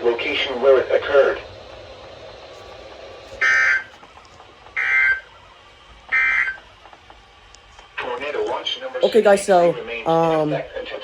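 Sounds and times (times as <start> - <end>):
screechy digital data tones: 6.1 - 6.6.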